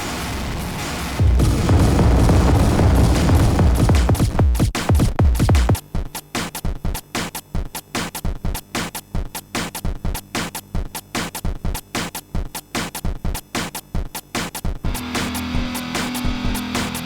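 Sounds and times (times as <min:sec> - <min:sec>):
faint low drone: 0:01.2 - 0:04.5
sharp percussive hits: 0:01.2 - 0:05.8.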